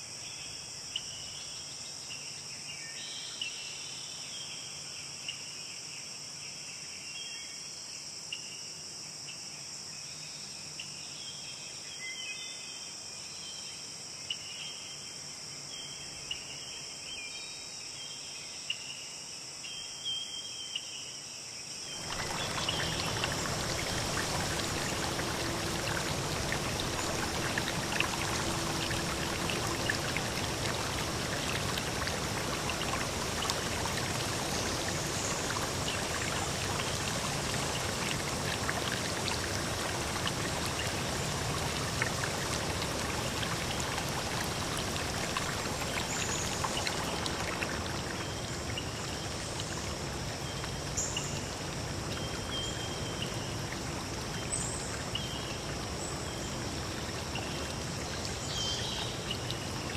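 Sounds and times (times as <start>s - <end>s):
insect chorus: 0.0s - 59.9s
flowing stream: 21.9s - 59.9s.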